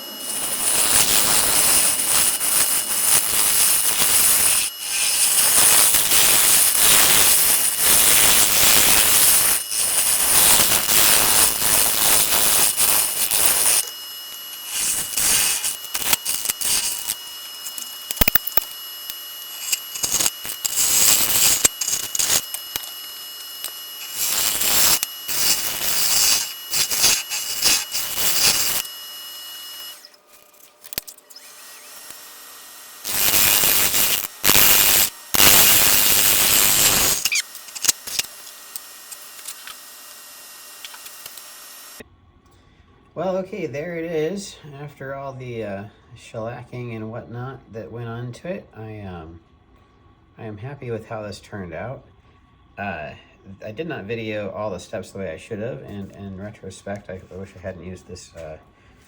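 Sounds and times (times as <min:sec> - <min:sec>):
wood rasping: 0:00.0 - 0:29.0, 0:29.6 - 0:38.4
wood lathe whine: 0:00.0 - 0:42.1.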